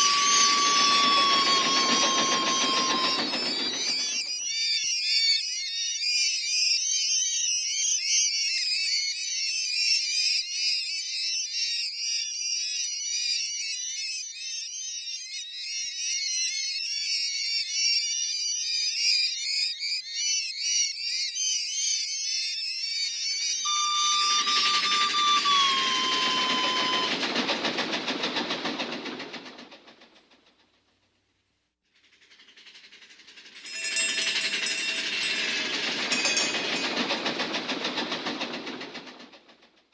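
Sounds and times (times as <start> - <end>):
train with whistle tone: 0.0 - 4.5, 23.1 - 30.3, 33.4 - 39.7.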